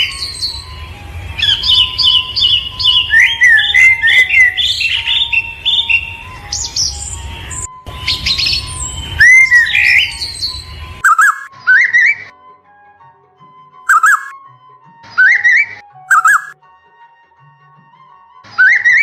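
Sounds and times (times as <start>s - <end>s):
small birds chirping: 0.0s - 12.3s, 13.9s - 14.3s, 15.1s - 16.6s, 18.5s - 19.0s.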